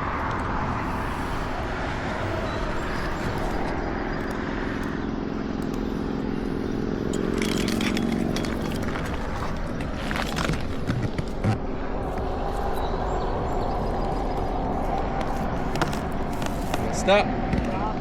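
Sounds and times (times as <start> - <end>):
engine humming: 0.0 - 18.0.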